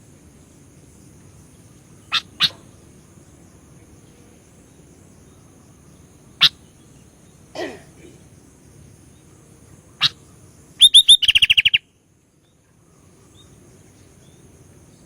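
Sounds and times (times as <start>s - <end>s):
faint high-pitched hiss: 0.0s - 15.0s
bird chip calls: 2.0s - 2.9s, 5.3s - 7.1s, 9.8s - 11.9s.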